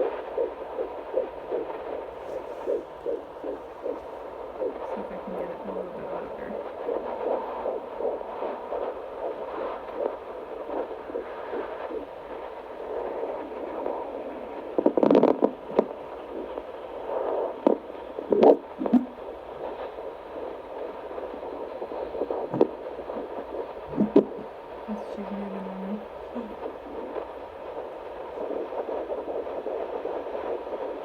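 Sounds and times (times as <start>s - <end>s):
doppler heartbeat whooshing pulses: 0.0s - 31.0s
scratchy thumps: 0.0s - 31.0s.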